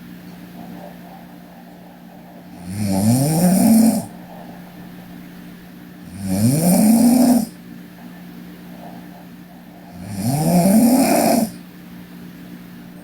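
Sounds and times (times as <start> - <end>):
steady low hum: 0.0 - 13.0
woman snoring: 2.5 - 4.2, 6.1 - 7.6, 9.9 - 11.6.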